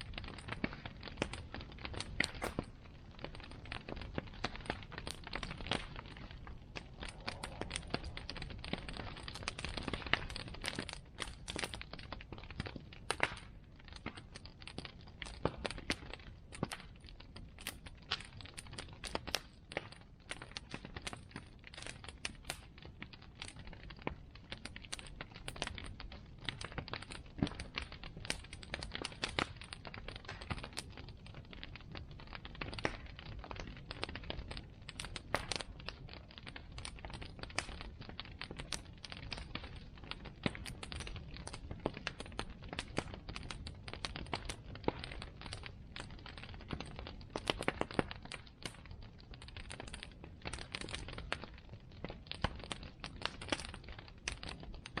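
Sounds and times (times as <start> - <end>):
low rush of flame: 0.0 - 17.0
bonfire crackling and popping: 0.0 - 55.0.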